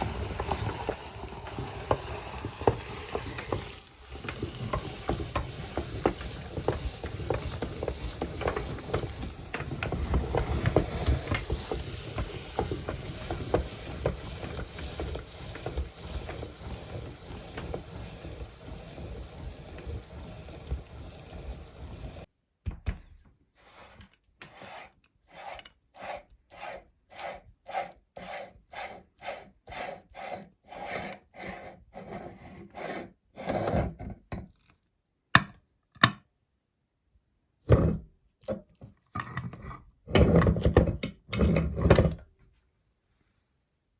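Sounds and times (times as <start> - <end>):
meat grinder crushing frozen fruit: 0.0 - 22.3.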